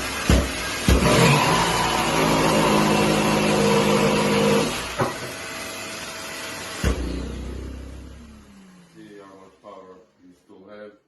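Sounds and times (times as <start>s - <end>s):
jigsaw cutting wood: 0.0s - 8.5s
vacuum running: 0.0s - 9.5s.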